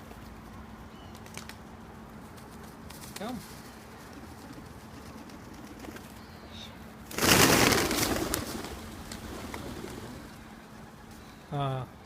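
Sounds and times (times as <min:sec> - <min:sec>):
pigeon wings flapping: 0:01.1 - 0:01.6, 0:02.2 - 0:06.2, 0:07.1 - 0:10.2.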